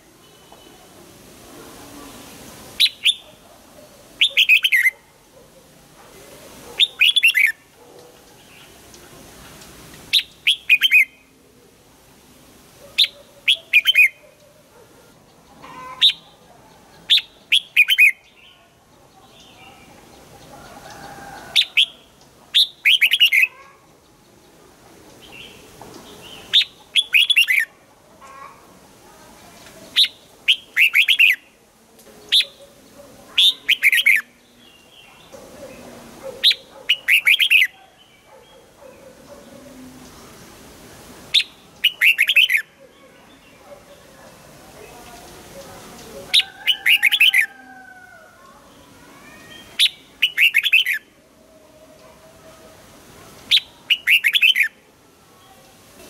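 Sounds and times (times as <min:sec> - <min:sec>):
bird singing short phrases: 0:10.1 - 0:11.3.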